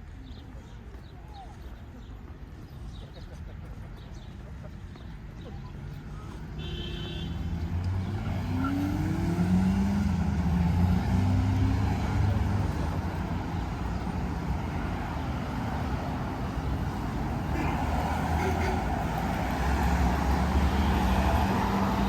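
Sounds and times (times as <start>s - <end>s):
vehicle engine passing by: 7.3s - 22.0s.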